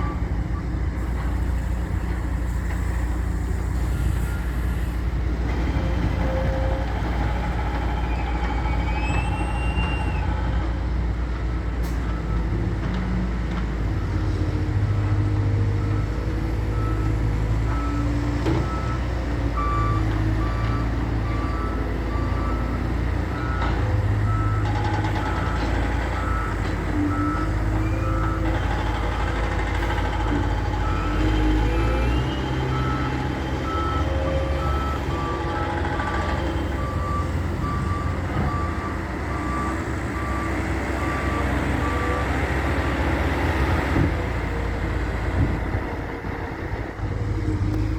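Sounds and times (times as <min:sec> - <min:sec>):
diesel loader engine working: 0:00.0 - 0:47.9
reversing alarm beeping: 0:15.8 - 0:44.1.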